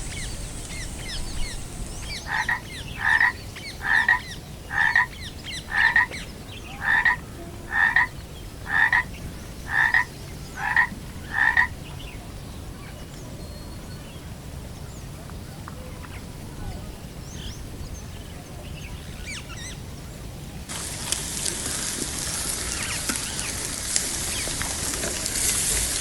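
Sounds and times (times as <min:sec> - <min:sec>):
frog croaking: 0:00.0 - 0:11.8.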